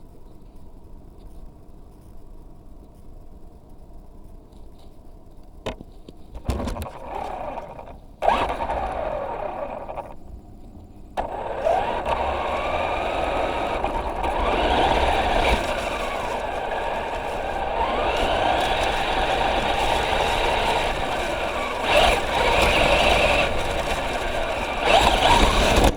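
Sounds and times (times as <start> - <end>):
electric motor whining: 6.4 - 10.2, 11.2 - 25.9.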